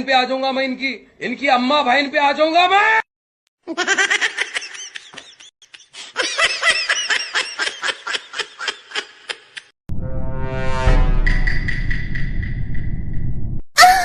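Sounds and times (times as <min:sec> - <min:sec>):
person laughing: 0:03.6 - 0:09.7.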